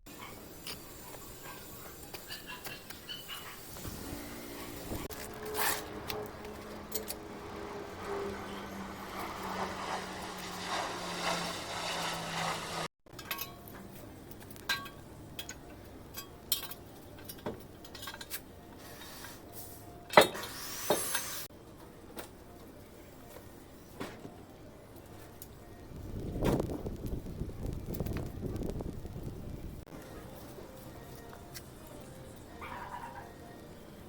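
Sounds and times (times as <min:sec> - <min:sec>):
hand tools clinking on metal: 0:13.1 - 0:19.1.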